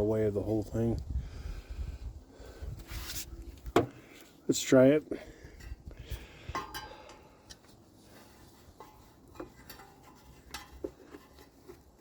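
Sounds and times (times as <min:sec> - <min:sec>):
faint metallic clinks and knocks: 0:06.4 - 0:07.8, 0:08.7 - 0:12.0.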